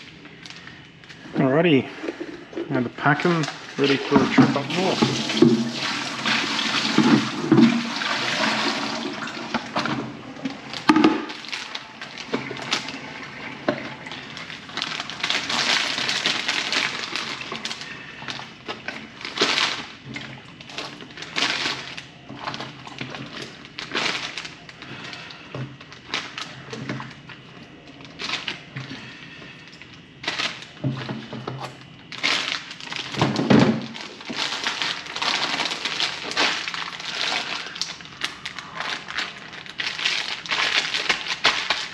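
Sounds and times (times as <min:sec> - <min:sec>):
water sloshing and splashing: 0:02.0 - 0:41.9
crackles and knocks: 0:09.5 - 0:41.9.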